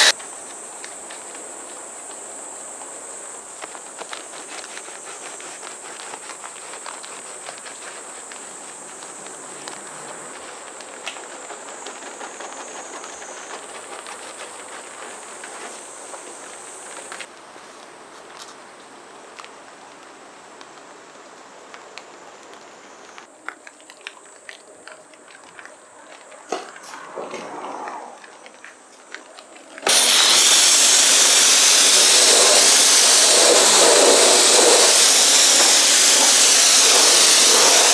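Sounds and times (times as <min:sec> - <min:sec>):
high-pitched insect chorus: 0:29.9 - 0:37.9.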